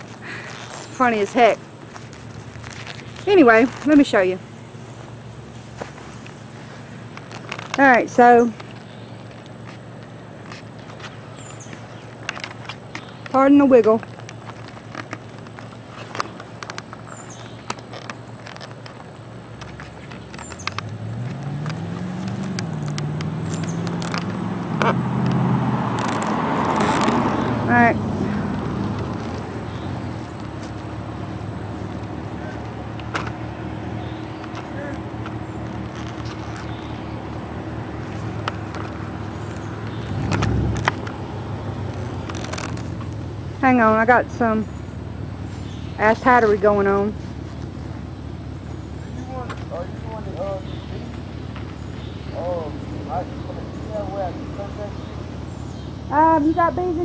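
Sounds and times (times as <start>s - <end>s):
vehicle engine approaching: 0.0s - 57.0s
sharp clicks: 7.1s - 27.6s.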